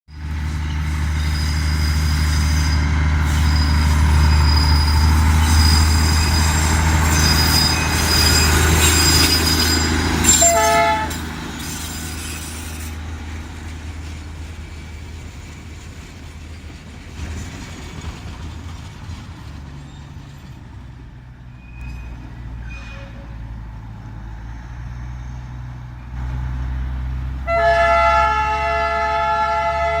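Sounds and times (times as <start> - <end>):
wheels squealing: 0.1 - 20.7, 21.5 - 23.5
train rumbling: 0.1 - 30.0
train horn: 10.2 - 11.2, 27.4 - 30.0.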